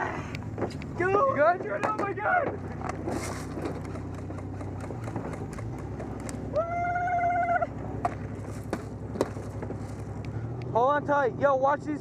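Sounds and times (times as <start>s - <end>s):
truck engine running: 0.0s - 12.0s.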